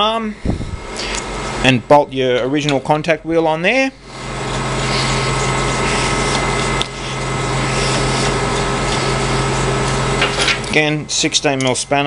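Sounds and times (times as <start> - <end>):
belt grinder motor whirring: 4.0 - 10.8.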